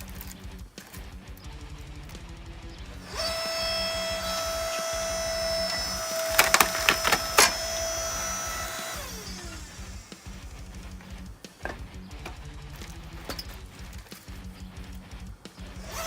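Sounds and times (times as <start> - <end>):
chainsaw cutting through log: 2.9 - 11.0, 15.8 - 16.0
wood cracking: 3.1 - 10.0.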